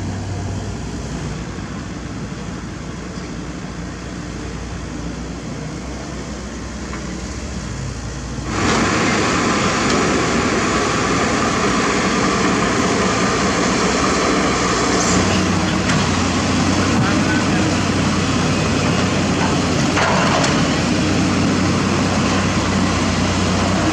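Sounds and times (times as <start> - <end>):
excavator diesel engine running: 0.0 - 23.9.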